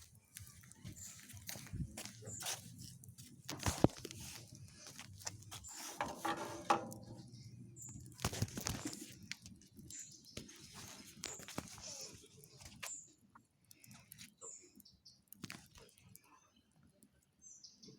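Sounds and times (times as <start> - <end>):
campfire crackling and popping: 7.0 - 16.2.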